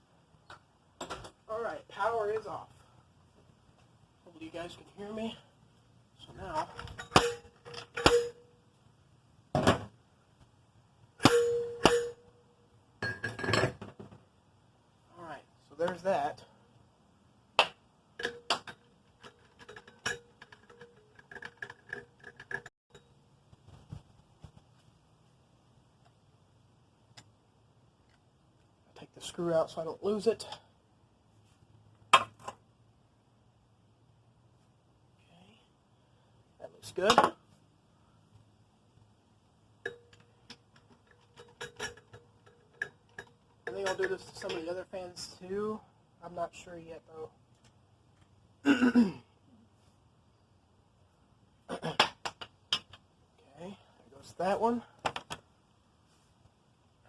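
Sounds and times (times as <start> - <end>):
small metallic clicks and clinks: 18.2 - 23.2, 39.8 - 44.7.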